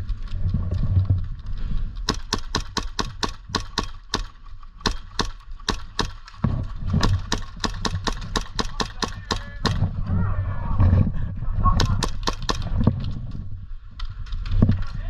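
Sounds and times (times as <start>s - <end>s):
low rumble: 0.0s - 15.0s
airsoft gun shots: 2.1s - 9.9s, 11.8s - 12.8s.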